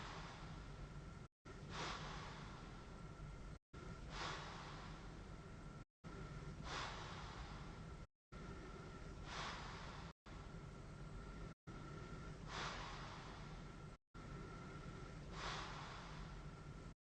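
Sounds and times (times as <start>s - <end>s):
machine whine and hum: 0.0s - 17.0s
heavy breathing through mask: 3.8s - 5.2s, 6.1s - 7.8s, 8.4s - 10.1s, 11.7s - 16.6s.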